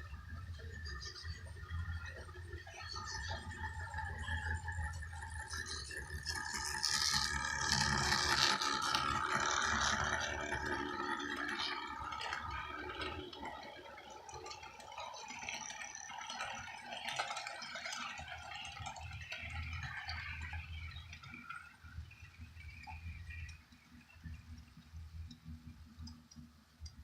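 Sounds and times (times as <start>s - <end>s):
model train rattling on track: 0.0s - 25.3s.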